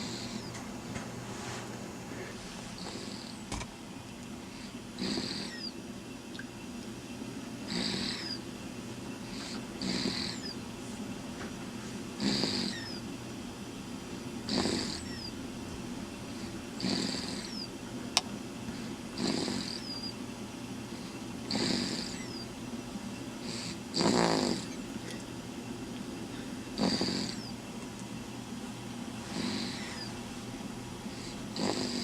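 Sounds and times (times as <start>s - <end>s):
person snoring: 2.8s - 3.4s, 5.0s - 5.7s, 7.7s - 8.4s, 9.4s - 10.5s, 12.2s - 12.9s, 14.5s - 15.1s, 16.8s - 17.6s, 19.2s - 19.9s, 21.5s - 22.2s, 23.5s - 24.7s, 26.8s - 27.5s, 29.3s - 30.1s, 31.2s - 32.0s.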